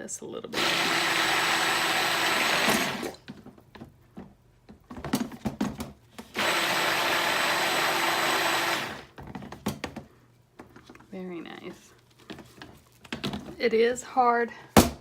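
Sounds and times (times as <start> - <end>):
stick blender running: 0.5 - 3.2, 6.3 - 9.1.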